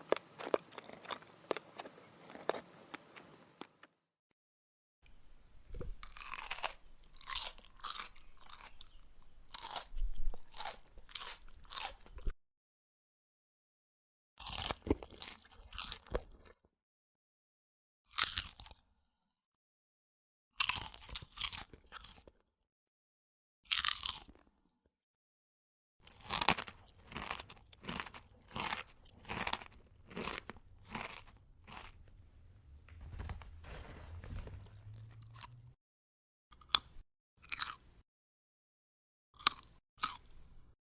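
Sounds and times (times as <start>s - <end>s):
chewing crunchy food: 0.0s - 3.9s, 5.7s - 12.3s, 14.4s - 16.6s, 20.6s - 22.3s, 23.7s - 24.5s, 26.0s - 33.2s, 36.6s - 37.9s, 39.4s - 40.5s.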